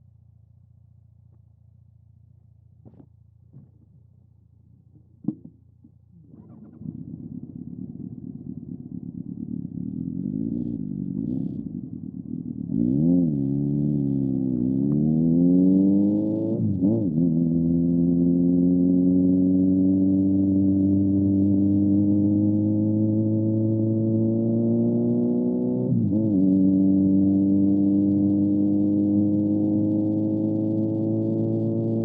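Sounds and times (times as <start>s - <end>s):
motorcycle engine running: 6.2s - 15.0s
motorcycle engine revving: 6.3s - 32.0s.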